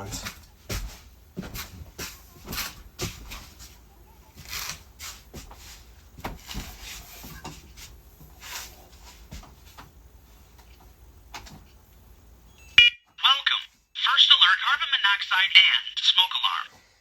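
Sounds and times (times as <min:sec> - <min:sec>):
soft rustles: 0:00.1 - 0:11.0.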